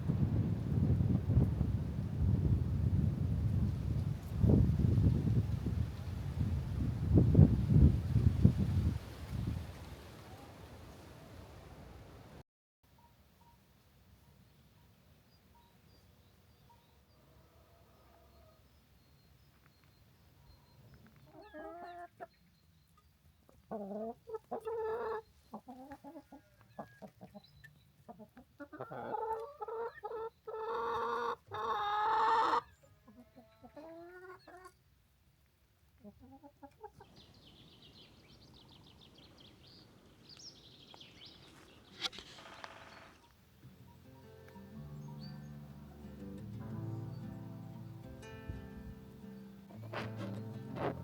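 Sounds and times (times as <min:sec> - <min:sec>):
chickens clucking and calling: 0:21.1 - 0:22.5, 0:23.5 - 0:34.9, 0:36.0 - 0:37.6.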